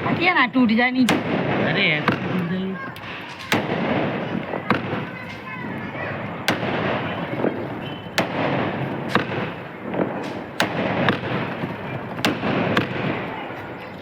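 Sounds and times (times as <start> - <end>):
firework bangs: 0.0 - 14.0
hissing crackle: 0.0 - 14.0.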